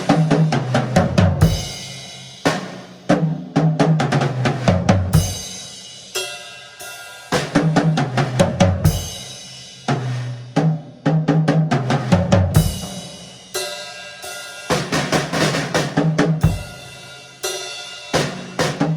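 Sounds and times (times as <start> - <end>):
bass drum: 0.0 - 5.7, 7.5 - 13.3, 15.4 - 16.9
drum fills on snare and toms: 0.0 - 6.3, 7.3 - 13.7, 14.7 - 18.9.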